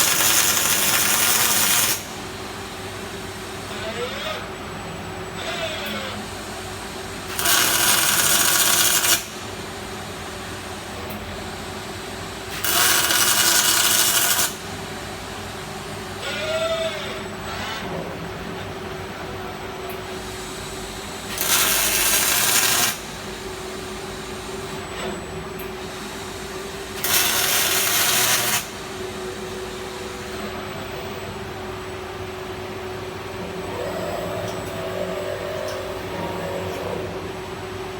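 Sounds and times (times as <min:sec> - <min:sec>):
welding arc: 0:00.0 - 0:02.4, 0:07.0 - 0:09.5, 0:12.4 - 0:14.8, 0:20.5 - 0:23.3, 0:25.8 - 0:29.0
machine hum: 0:17.0 - 0:37.9.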